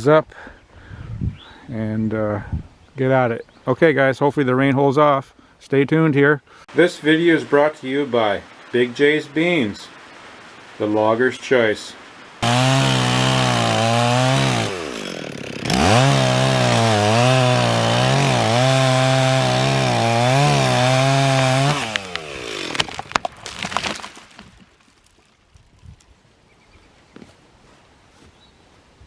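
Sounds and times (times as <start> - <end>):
chainsaw cutting wood: 12.4 - 24.5
wood cracking: 12.4 - 26.1.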